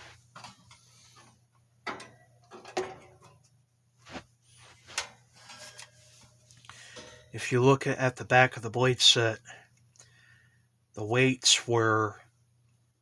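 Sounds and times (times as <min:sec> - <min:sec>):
metal fan knocking and scraping: 0:01.8 - 0:03.4, 0:04.8 - 0:06.0.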